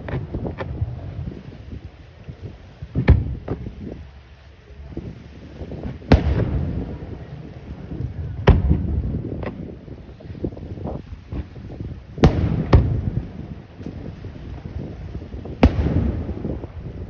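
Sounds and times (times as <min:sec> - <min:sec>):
low rolling rumble: 0:00.0 - 0:17.0
fireworks bursting: 0:05.6 - 0:09.9, 0:11.3 - 0:17.0.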